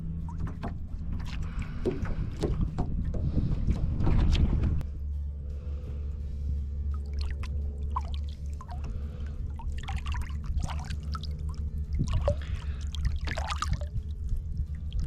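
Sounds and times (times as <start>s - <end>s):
water splashing and trickling: 0.0s - 4.6s, 6.9s - 15.0s
low rumble: 0.0s - 15.0s.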